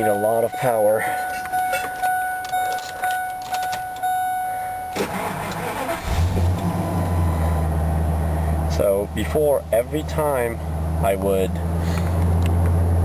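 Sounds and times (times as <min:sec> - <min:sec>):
vehicle warning chime: 0:00.0 - 0:07.6
car engine idling: 0:00.0 - 0:13.0
engine starter cranking: 0:04.9 - 0:07.2.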